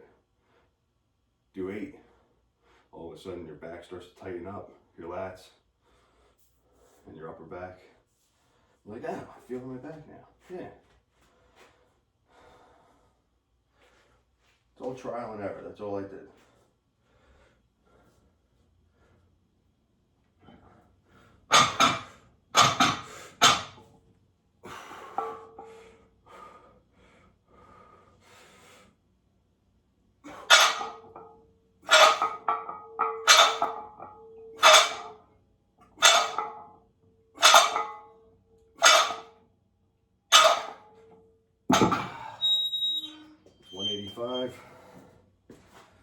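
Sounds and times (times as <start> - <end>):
man breathing forcefully: 24.6 - 29.0.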